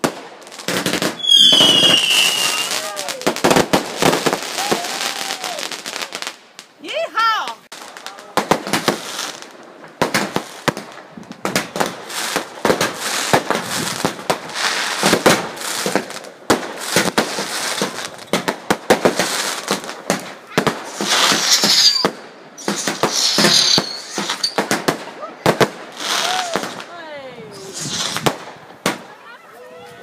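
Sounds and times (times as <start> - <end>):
fireworks banging: 0.0 - 29.3
fireworks crackling: 0.0 - 29.4
high firework whistles: 0.8 - 6.0, 19.1 - 25.0, 27.5 - 29.0.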